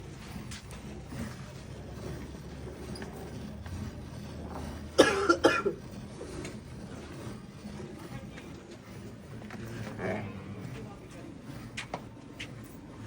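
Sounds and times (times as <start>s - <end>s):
person coughing: 5.0s - 5.8s.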